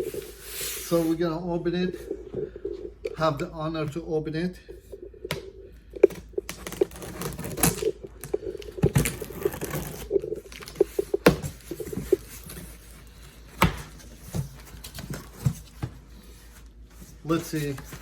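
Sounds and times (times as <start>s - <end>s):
cardboard scraping and tearing: 6.6s - 7.8s, 8.9s - 10.7s.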